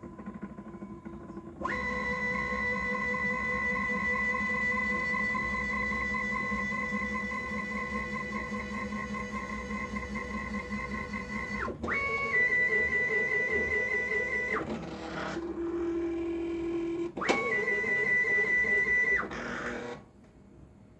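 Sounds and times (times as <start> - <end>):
stepper motors whining: 0.3 - 15.7.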